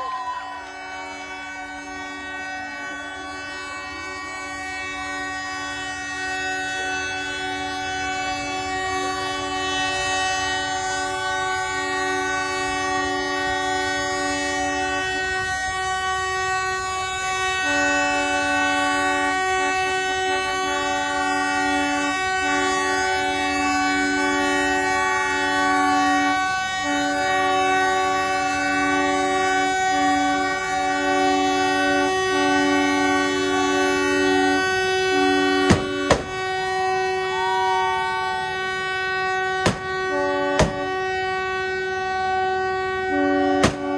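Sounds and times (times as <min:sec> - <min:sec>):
locomotive horns blowing: 0:00.0 - 0:43.9
track detonator bang: 0:35.6 - 0:36.5, 0:39.6 - 0:41.1, 0:43.5 - 0:43.9.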